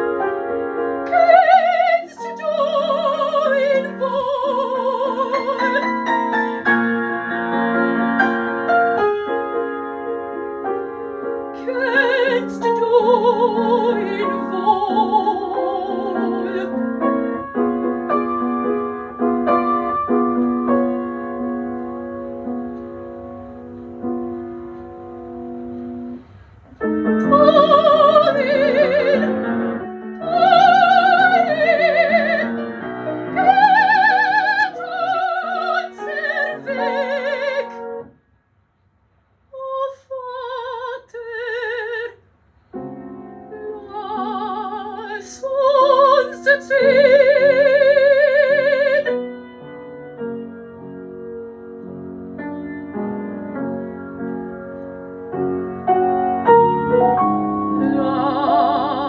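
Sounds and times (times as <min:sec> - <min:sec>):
piano accompaniment: 0:00.0 - 0:38.2, 0:39.7 - 0:59.0
soprano singing with vibrato: 0:01.1 - 0:06.1, 0:11.6 - 0:16.8, 0:27.0 - 0:29.5, 0:30.1 - 0:32.7, 0:33.3 - 0:38.0, 0:39.6 - 0:42.2, 0:43.5 - 0:49.2, 0:57.8 - 0:59.0.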